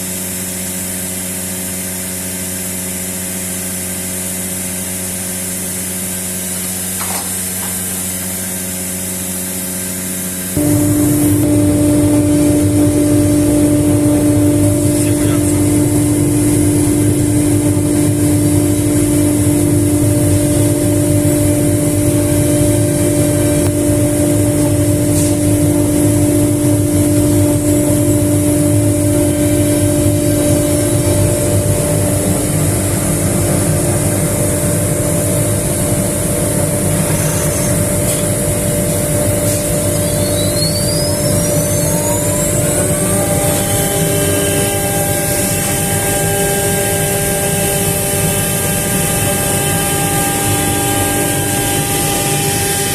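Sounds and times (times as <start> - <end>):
router spindle whining: 0.0 - 52.9
broad rushing noise: 40.8 - 52.9.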